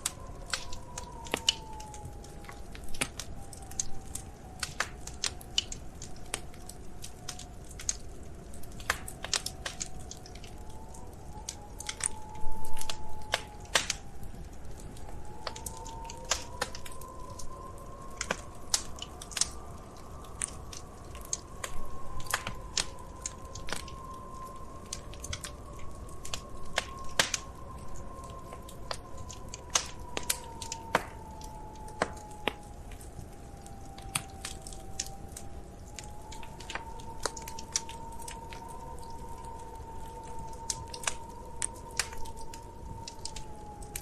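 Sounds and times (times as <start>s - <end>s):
wood fire crackling: 0.0s - 44.0s
faint wavering hum: 9.5s - 44.0s.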